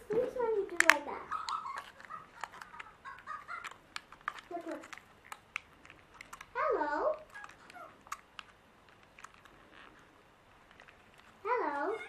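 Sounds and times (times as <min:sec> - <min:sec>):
toy handling clicks and taps: 0:00.0 - 0:11.5
toy squeaky recorded voice: 0:00.7 - 0:05.0, 0:06.4 - 0:08.2, 0:11.5 - 0:12.0.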